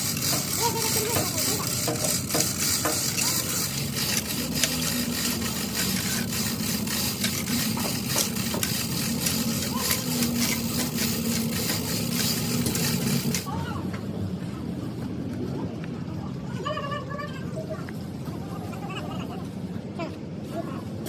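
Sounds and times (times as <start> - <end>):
rapid rattle of clicks: 0.0 - 13.5
machine low hum: 0.0 - 13.6.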